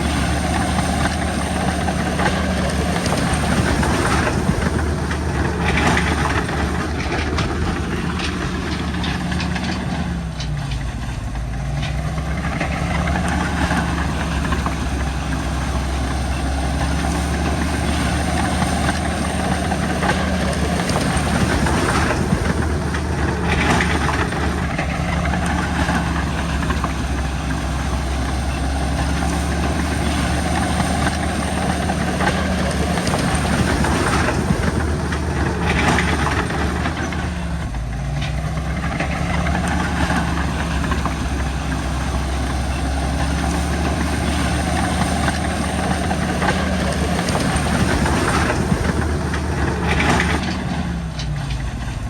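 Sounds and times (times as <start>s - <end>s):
diesel engine running: 0.0s - 52.0s
steel tracks clanking: 0.0s - 52.0s.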